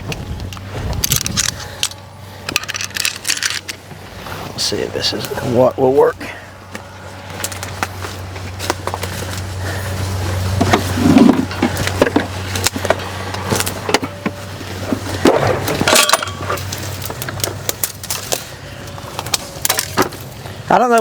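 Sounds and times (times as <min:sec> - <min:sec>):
steady low hum: 0:00.0 - 0:21.0
metal parts and tools clinking: 0:00.5 - 0:03.8, 0:10.6 - 0:20.4.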